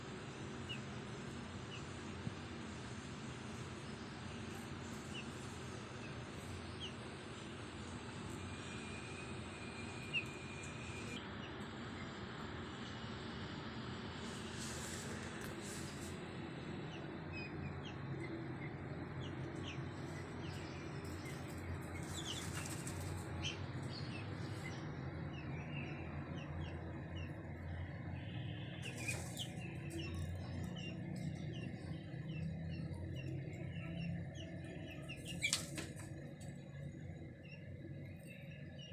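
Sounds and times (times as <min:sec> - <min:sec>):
partridges chirping: 0:28.8 - 0:33.3, 0:34.0 - 0:35.8.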